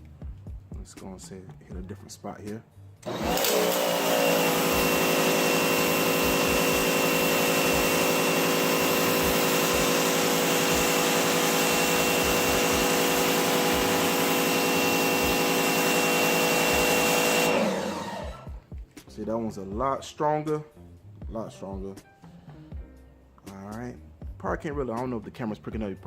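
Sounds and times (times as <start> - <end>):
pressure washer motor hum: 3.0 - 18.6
water jet hissing: 3.4 - 18.5.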